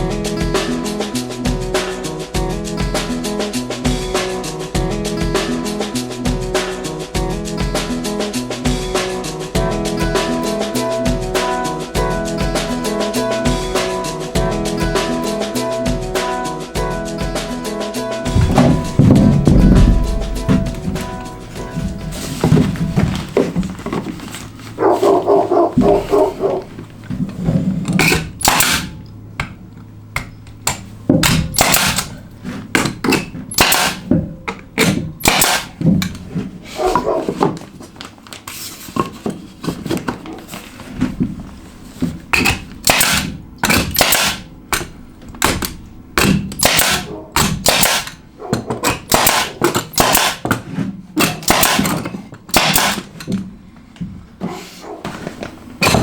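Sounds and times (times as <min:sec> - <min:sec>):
tool knocks and snaps: 0:27.8 - 0:32.1, 0:32.7 - 0:36.3, 0:42.3 - 0:53.5.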